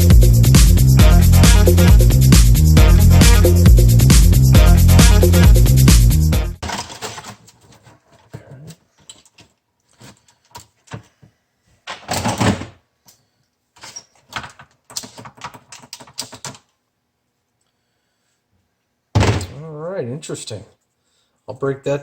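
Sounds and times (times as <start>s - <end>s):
plastic parts clicking and rattling: 6.6s - 11.2s, 11.8s - 16.8s.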